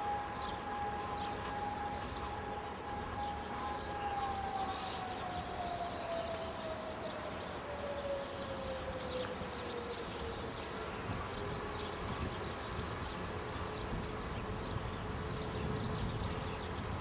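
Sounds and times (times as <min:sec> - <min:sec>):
fire siren winding down: 0:00.0 - 0:12.2.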